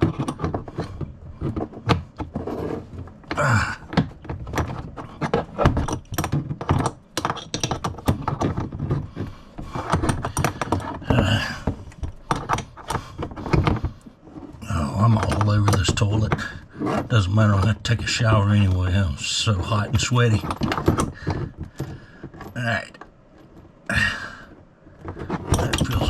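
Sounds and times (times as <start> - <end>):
tools clicking and knocking on fittings: 0.0 - 26.0
thunks: 3.2 - 14.0.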